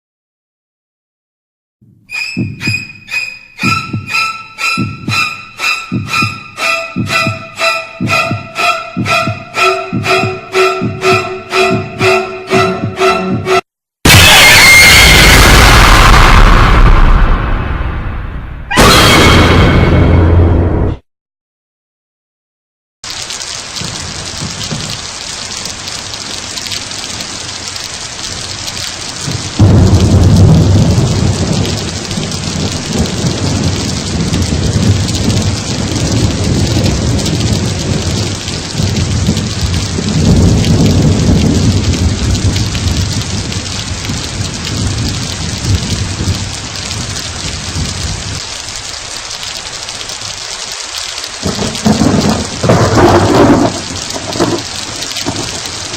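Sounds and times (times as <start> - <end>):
heavy rain: 2.2 - 20.4, 23.0 - 55.9
loud thunderclap: 14.1 - 20.4, 29.1 - 48.6, 51.4 - 55.9
rolling thunder: 14.1 - 20.7, 28.3 - 50.4, 51.3 - 55.9.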